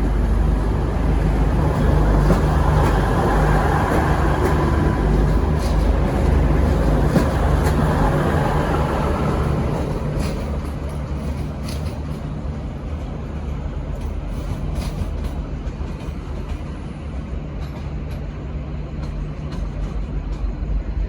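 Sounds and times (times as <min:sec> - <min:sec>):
diesel train engines rumbling: 0:00.0 - 0:21.0.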